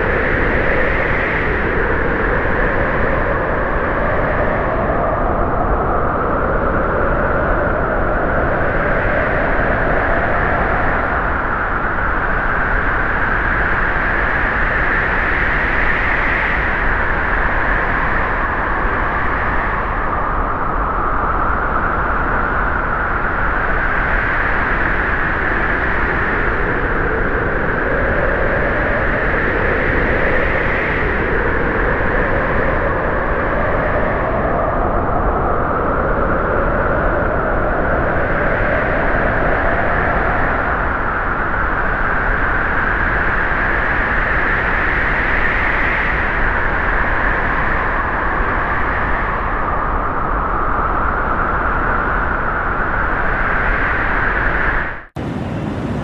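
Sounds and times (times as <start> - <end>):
loud rushing noise: 55.2 - 56.0.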